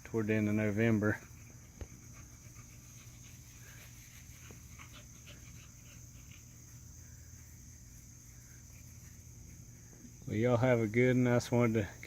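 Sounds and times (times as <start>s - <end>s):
crickets chirring: 0.0s - 12.0s
puppies playing: 0.4s - 10.2s.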